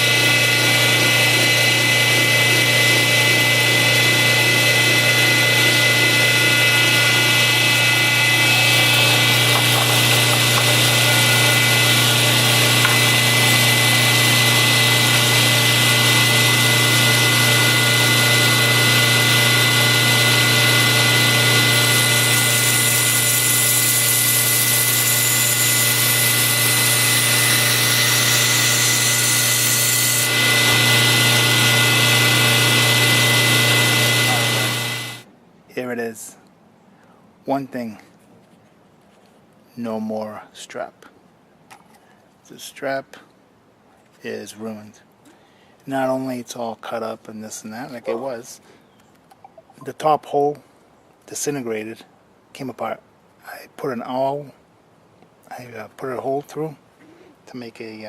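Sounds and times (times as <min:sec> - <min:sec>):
sharpening machine humming: 0:00.0 - 0:35.3.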